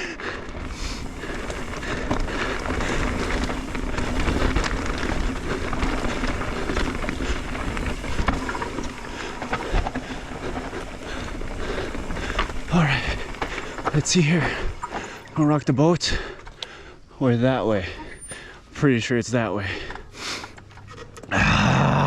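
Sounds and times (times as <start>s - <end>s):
bike tyres rolling on dirt trail: 0.0s - 22.0s
bike clattering and knocking: 0.6s - 15.2s.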